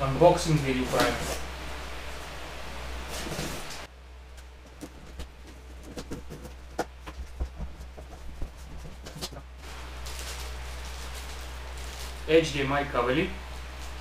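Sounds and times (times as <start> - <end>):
low hum: 0.0 - 14.0
packaging clicks and rustles: 4.7 - 12.3.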